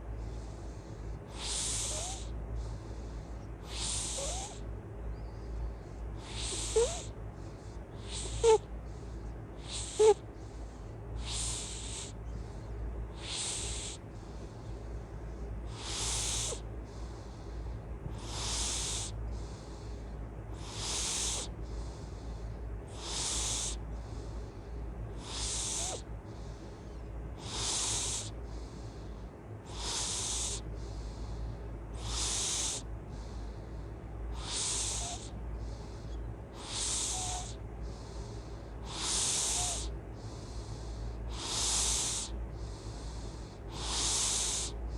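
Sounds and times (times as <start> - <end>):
steady low hum: 0.0 - 44.9
person snoring: 3.7 - 4.6, 6.3 - 7.1.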